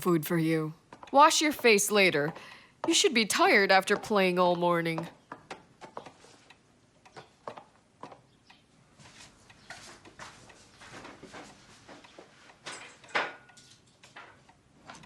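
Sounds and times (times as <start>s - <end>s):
faint clicks and knocks: 0.8s - 1.2s, 2.0s - 15.0s
soft rustling: 9.0s - 13.0s.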